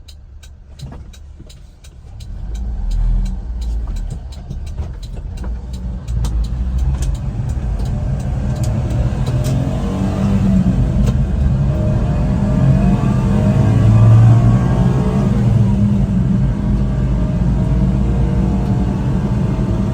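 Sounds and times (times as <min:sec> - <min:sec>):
light rapid ticks: 0:00.0 - 0:09.6
truck engine accelerating: 0:00.0 - 0:19.9.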